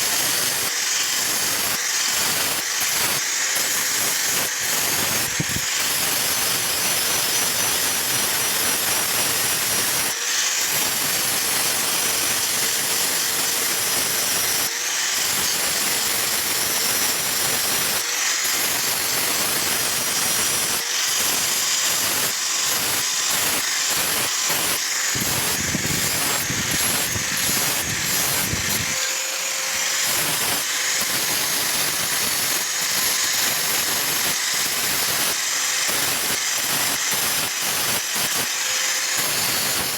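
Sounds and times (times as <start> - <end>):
workshop machine hiss with motor whine: 0.0 - 9.2.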